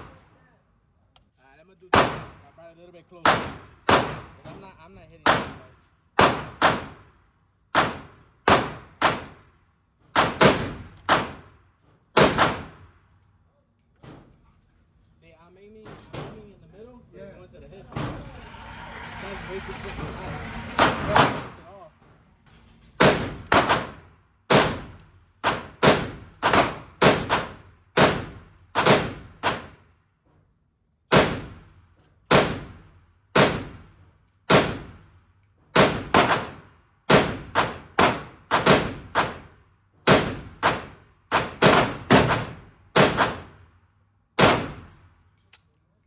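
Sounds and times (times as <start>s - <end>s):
gunshots echoing indoors: 23.0s - 29.7s, 40.1s - 43.5s, 44.4s - 45.0s.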